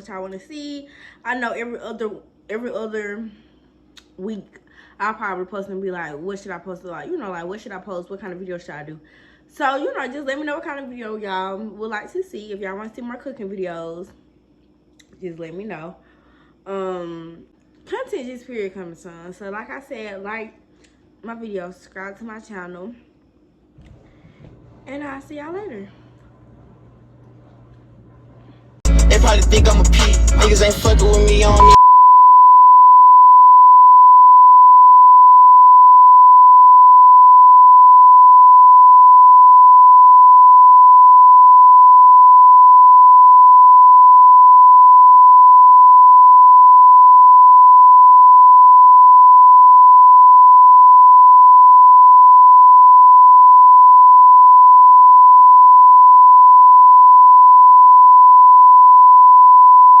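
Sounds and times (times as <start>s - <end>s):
steady electronic beep tone: 31.6s - 60.0s.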